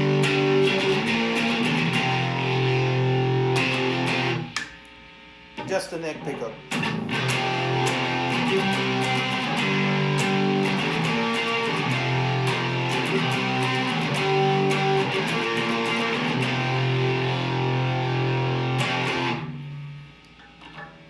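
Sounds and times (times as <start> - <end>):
distorted electric guitar chords: 0.0 - 21.0.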